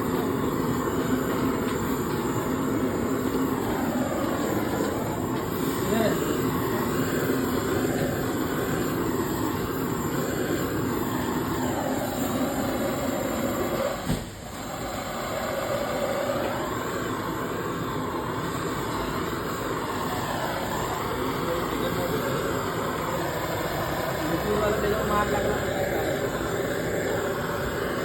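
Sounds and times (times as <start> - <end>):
blowtorch flame roaring: 0.0 - 28.0
brief knock: 14.0 - 14.3.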